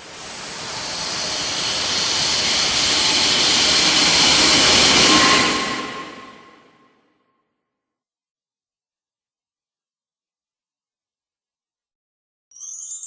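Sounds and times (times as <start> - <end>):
long hissing whoosh: 0.0 - 6.9.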